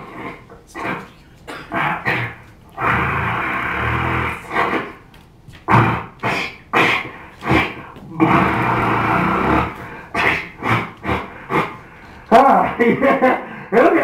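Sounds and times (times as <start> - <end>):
man making growly vocal effects: 5.7 - 13.1.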